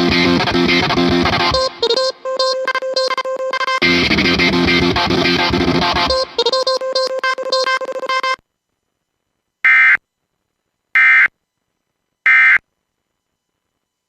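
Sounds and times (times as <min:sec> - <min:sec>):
choppy music: 0:00.0 - 0:08.4
digital data tone bursts: 0:00.2 - 0:08.4.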